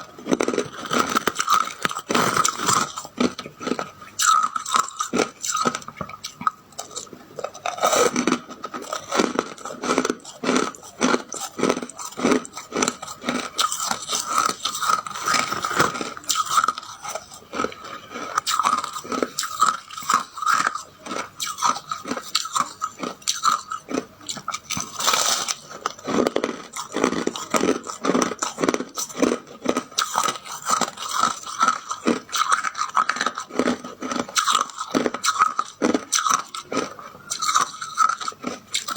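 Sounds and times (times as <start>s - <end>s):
person chewing ice: 0.0s - 38.9s.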